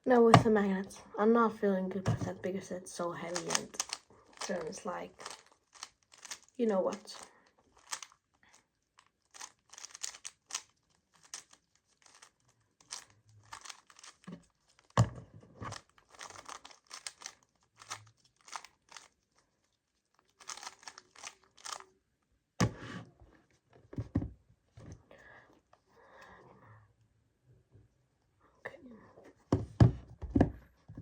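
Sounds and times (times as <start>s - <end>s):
puzzle cube clicking and scraping: 3.2s - 8.3s, 9.0s - 19.2s, 20.2s - 21.9s.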